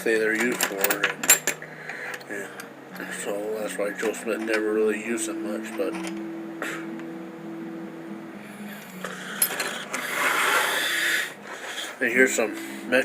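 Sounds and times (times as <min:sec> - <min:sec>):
steel wrenches clinking together: 0:00.3 - 0:01.6.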